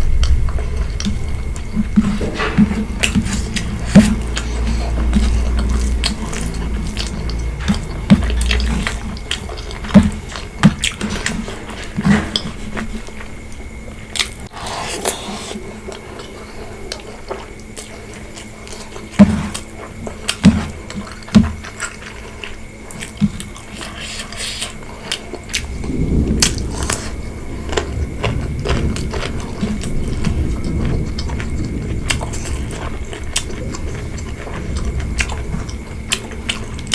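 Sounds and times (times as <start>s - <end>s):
low rumble: 0.0s - 13.9s, 25.6s - 36.9s
chewing food: 0.0s - 36.9s.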